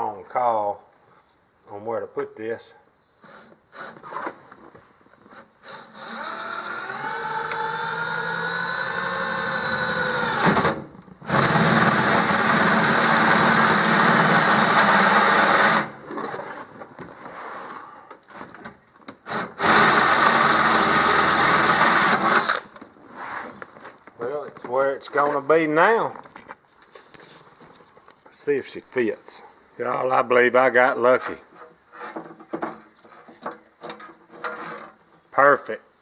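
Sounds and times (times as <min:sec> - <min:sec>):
power drill cutting: 0:05.6 - 0:16.0, 0:19.3 - 0:22.7.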